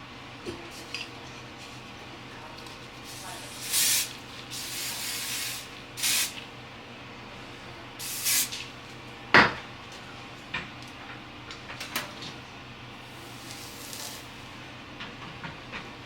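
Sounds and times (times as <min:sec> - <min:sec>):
spray hissing bursts: 0:03.6 - 0:06.4, 0:08.0 - 0:08.5.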